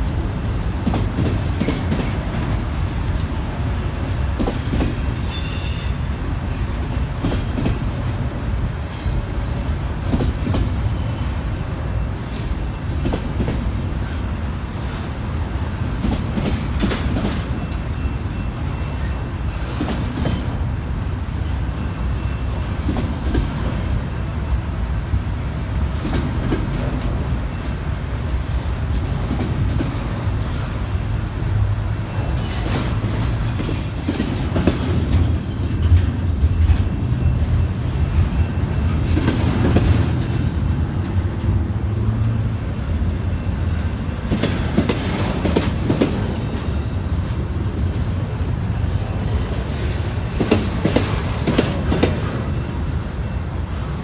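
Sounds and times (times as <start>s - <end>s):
train rumbling past: 0.0s - 54.0s
wheels clicking over rail joints: 47.9s - 53.0s.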